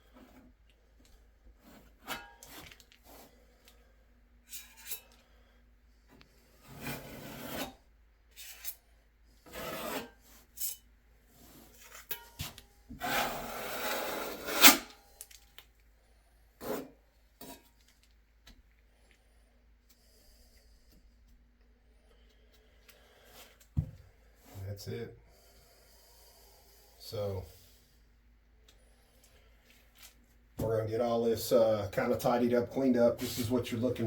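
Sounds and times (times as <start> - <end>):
sealant rubbing and scraping: 13.0 - 14.9.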